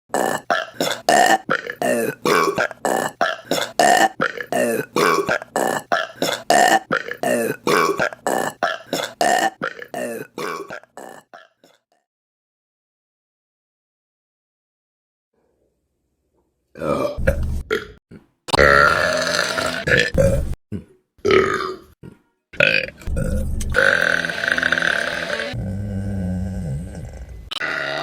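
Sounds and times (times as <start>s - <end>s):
rapid short burps: 16.8s - 25.4s.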